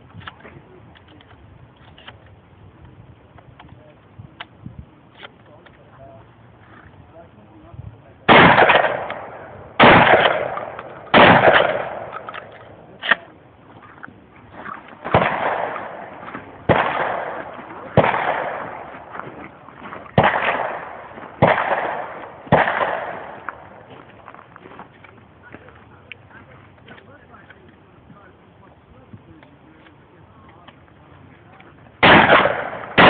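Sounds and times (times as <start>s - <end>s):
shotgun shots: 8.3s - 13.3s, 14.6s - 19.4s, 20.1s - 23.9s, 32.0s - 33.0s
sharp crack: 8.3s - 13.4s, 14.5s - 24.2s, 32.0s - 33.0s.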